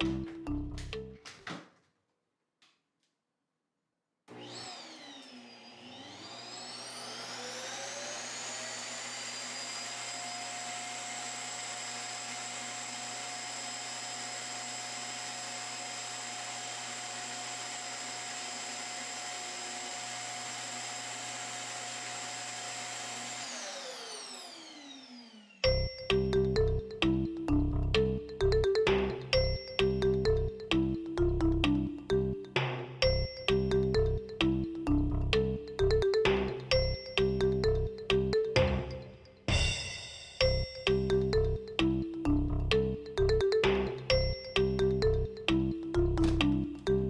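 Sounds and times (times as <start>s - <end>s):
vacuum cleaner motor whine: 4.3s - 25.6s.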